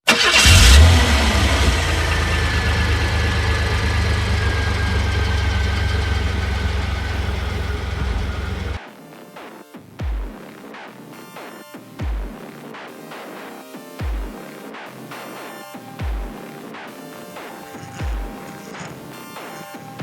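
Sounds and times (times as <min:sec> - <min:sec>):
engine starting and idling: 0:00.1 - 0:08.8.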